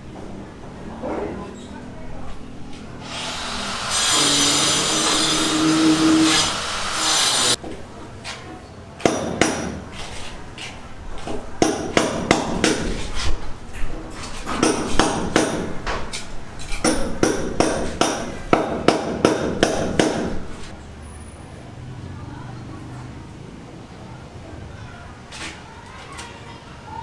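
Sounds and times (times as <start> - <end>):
hammer strikes: 9.0 - 9.8, 11.6 - 13.0, 14.5 - 16.0, 16.8 - 20.6.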